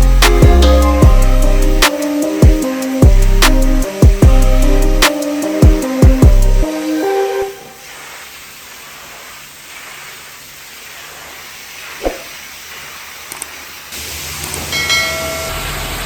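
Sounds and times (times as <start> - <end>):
music track: 0.0 - 7.8
pressure washer spray hissing: 0.0 - 14.8.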